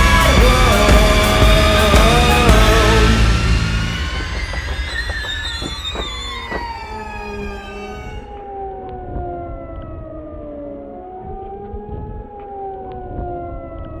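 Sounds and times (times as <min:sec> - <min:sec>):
low rumble: 0:00.0 - 0:09.8
wailing siren-like tones: 0:00.0 - 0:14.0.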